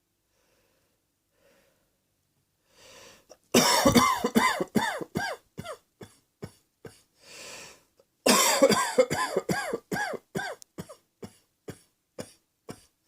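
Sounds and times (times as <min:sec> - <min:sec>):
person breathing in: 0:00.3 - 0:02.0, 0:02.6 - 0:03.4, 0:07.2 - 0:07.9
person coughing: 0:03.6 - 0:07.1, 0:08.3 - 0:13.0.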